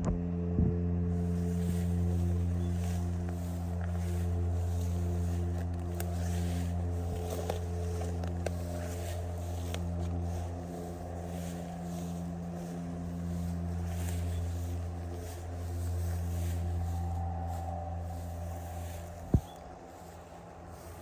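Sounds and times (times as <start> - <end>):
motor humming: 0.0 - 21.0.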